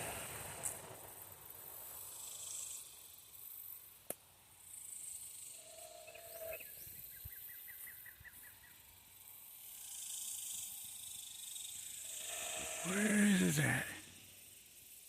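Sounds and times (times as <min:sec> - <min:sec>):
outdoor ambience hiss: 0:00.0 - 0:15.0.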